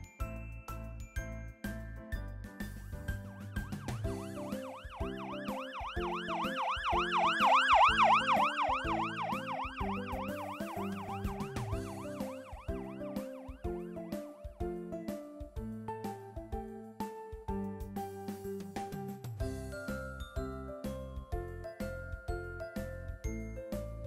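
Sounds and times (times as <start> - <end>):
children's music with steady beat: 0.0 - 24.0
police siren yelping: 3.4 - 14.0.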